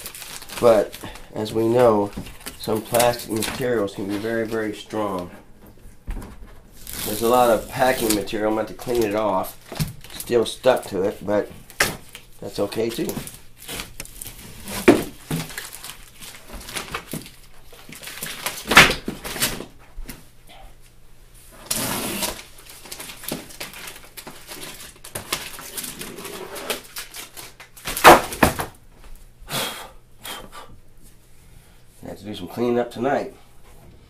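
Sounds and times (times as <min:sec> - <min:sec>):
packing material rustling: 0:00.0 - 0:05.3, 0:06.7 - 0:19.7, 0:21.6 - 0:28.6.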